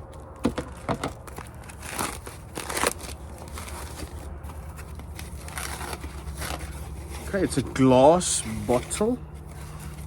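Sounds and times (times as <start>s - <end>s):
packaging crinkling and rustling: 0.1s - 10.0s.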